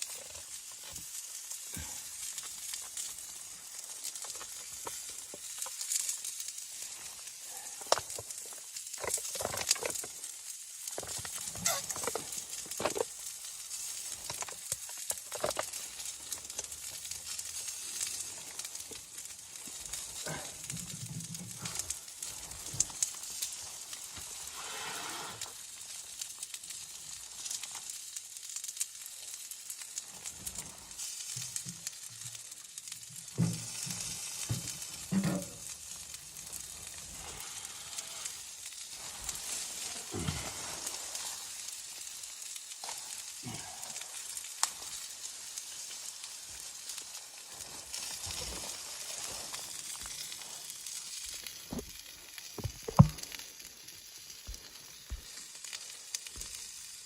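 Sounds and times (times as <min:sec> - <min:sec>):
food sizzling in a pan: 0:00.0 - 0:57.0
knocks and scrapes: 0:34.6 - 0:35.6, 0:52.6 - 0:53.3.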